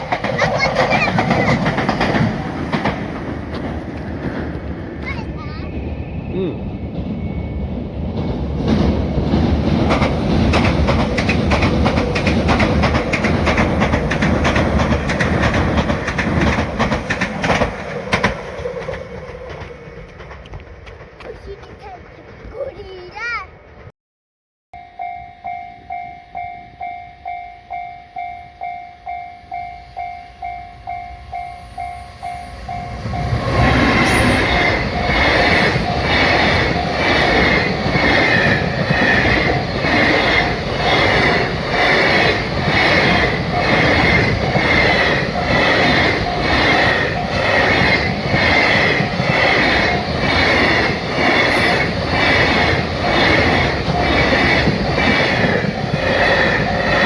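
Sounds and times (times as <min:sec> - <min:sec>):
train wheels clattering: 0:00.0 - 0:05.5, 0:08.0 - 0:22.9, 0:30.3 - 0:57.0.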